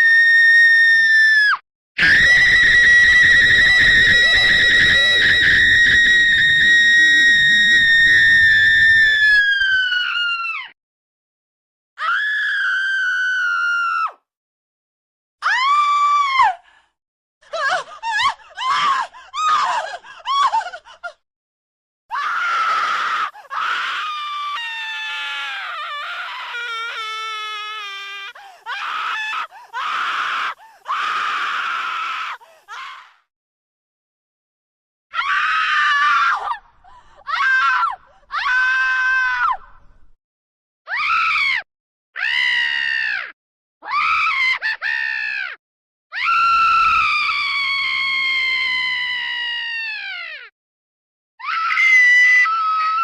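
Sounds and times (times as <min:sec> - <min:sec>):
woman screaming: 0:00.0 - 0:10.7.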